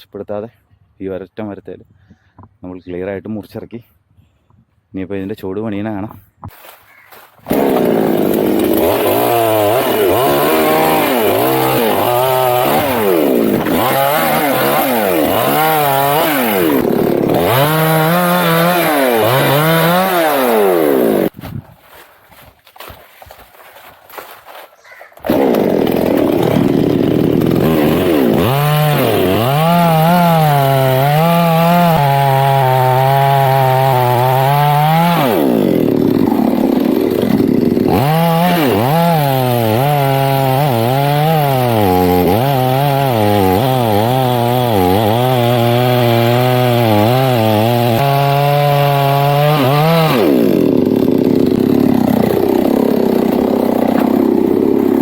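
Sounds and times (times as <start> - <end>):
chainsaw cutting wood at high revs: 7.4 - 21.4, 25.2 - 55.0.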